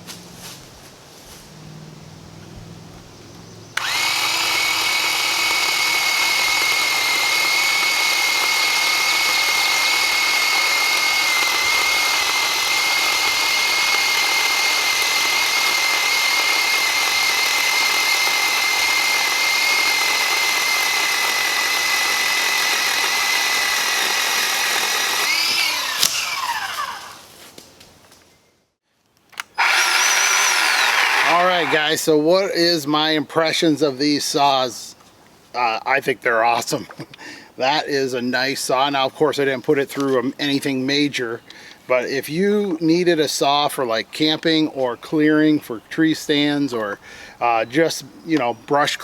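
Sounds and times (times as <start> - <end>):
electric pole saw whining: 3.8 - 27.3, 29.4 - 32.0.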